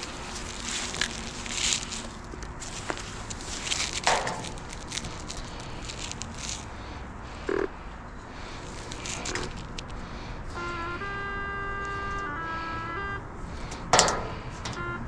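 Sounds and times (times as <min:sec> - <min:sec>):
footsteps outdoors rustling: 0:00.0 - 0:07.0, 0:08.0 - 0:12.3
brief tone: 0:14.7 - 0:15.0.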